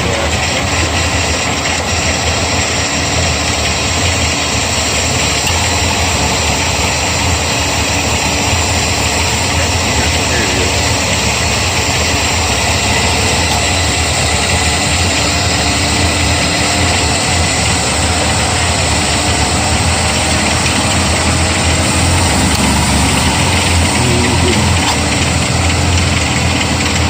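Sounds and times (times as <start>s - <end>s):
pickup engine idling: 0.0s - 27.0s.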